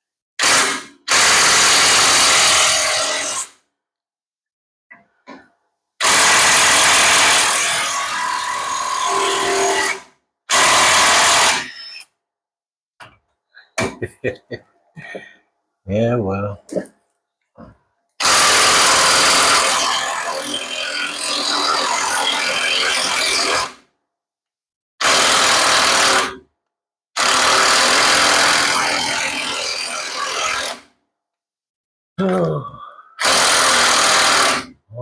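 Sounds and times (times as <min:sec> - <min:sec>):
person grunting: 0:32.2 - 0:33.0.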